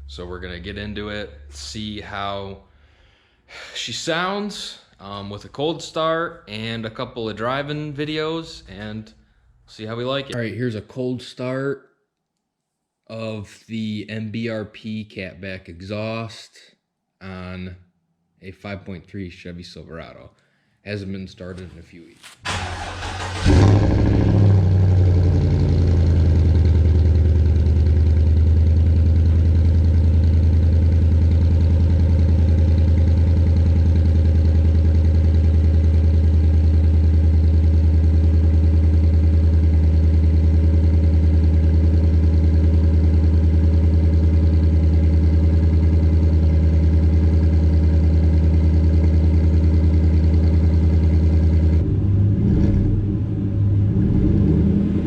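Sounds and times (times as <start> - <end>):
engine idling deep exhaust: 0.0 - 3.2, 22.5 - 55.0.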